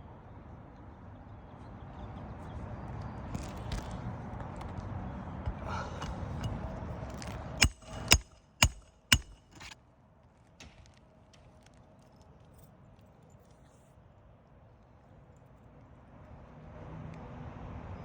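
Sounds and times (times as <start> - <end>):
hammer striking metal: 5.7 - 9.8.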